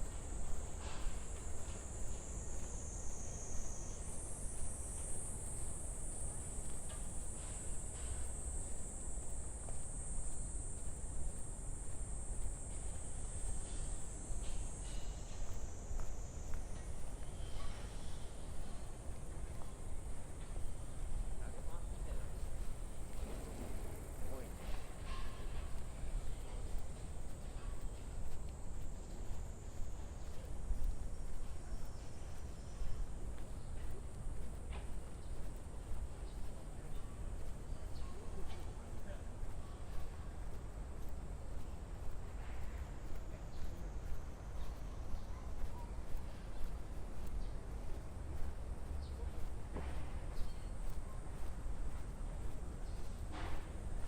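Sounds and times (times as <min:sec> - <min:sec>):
cicadas droning: 0:00.0 - 0:54.0.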